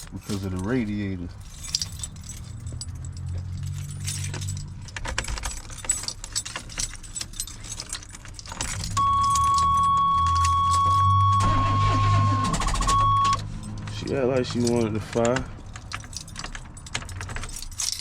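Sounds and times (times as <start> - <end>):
keys rattling in ignition: 0.0 - 18.0
high warning tone: 9.0 - 13.4.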